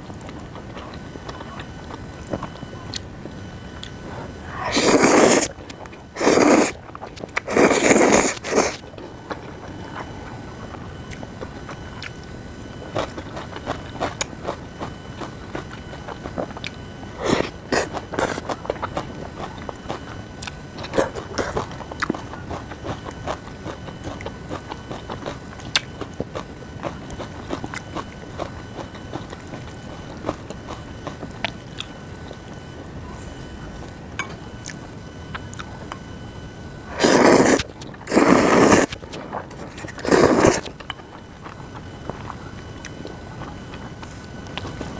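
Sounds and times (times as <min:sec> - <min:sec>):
chewing noodles: 0:00.1 - 0:03.1, 0:03.8 - 0:32.4, 0:36.9 - 0:44.9.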